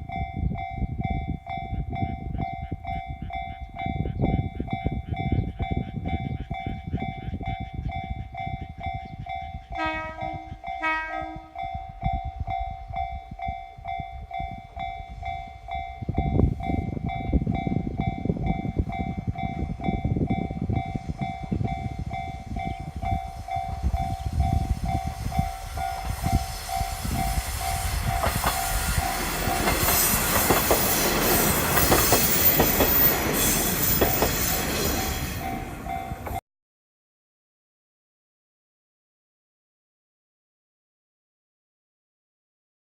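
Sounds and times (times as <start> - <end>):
train engine rumble: 0.0 - 36.4
level-crossing alarm ringing: 0.3 - 36.4
train horn blasts: 9.6 - 12.0
train wheels on rails: 11.7 - 36.4.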